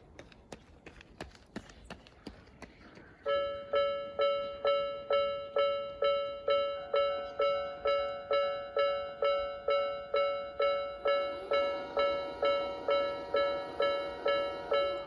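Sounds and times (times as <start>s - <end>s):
level crossing bell dinging: 3.3s - 15.0s
second crossing bell tone: 3.3s - 15.0s.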